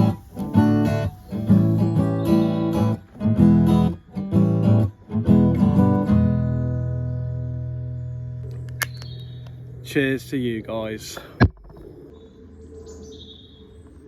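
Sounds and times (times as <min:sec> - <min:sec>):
strummed acoustic guitar: 0:00.0 - 0:08.4.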